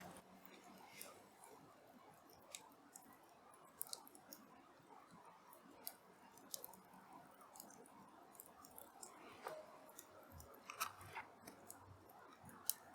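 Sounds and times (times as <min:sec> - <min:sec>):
small irregular clicks: 0:00.0 - 0:01.6, 0:02.2 - 0:12.9.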